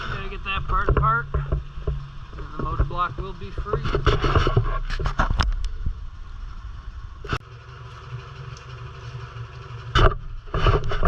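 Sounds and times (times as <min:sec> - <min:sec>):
sharp metallic knocks: 0:00.0 - 0:05.4
engine idling: 0:00.0 - 0:11.0.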